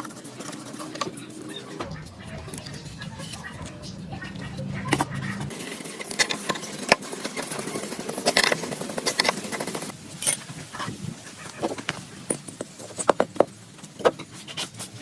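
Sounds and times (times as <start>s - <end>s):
metallic clinks and knocks: 12.3s - 13.4s.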